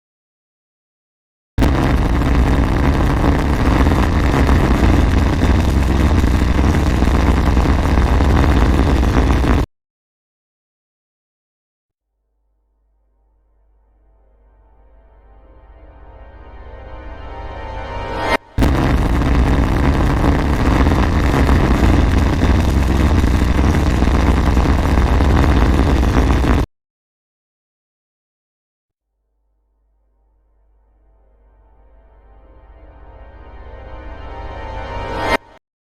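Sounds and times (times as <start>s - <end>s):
rocket engine roaring: 1.6s - 9.6s, 18.6s - 26.6s
rocket engines roaring: 18.6s - 26.5s.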